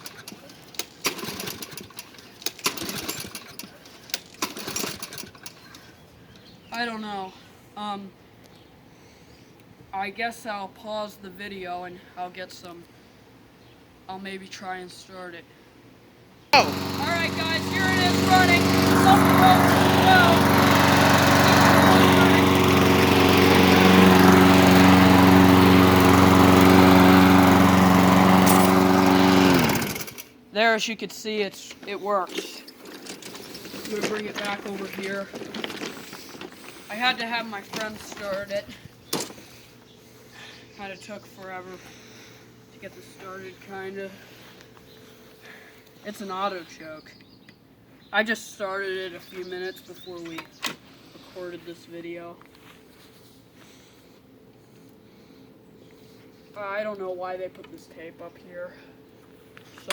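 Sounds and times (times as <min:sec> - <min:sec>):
mower engine turning over roughly: 0:00.0 - 0:05.9, 0:16.6 - 0:30.4, 0:31.7 - 0:39.4.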